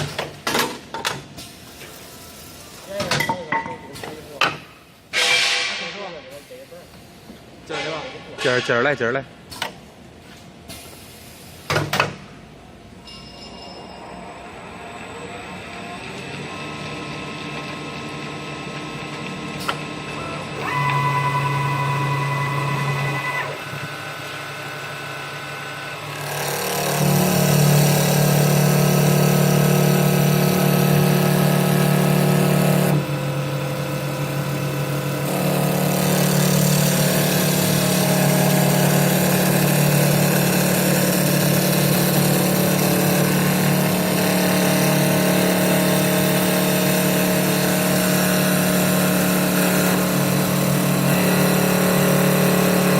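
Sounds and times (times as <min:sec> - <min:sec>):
machine whine: 0:13.1 - 0:52.9
lathe humming: 0:14.6 - 0:52.9.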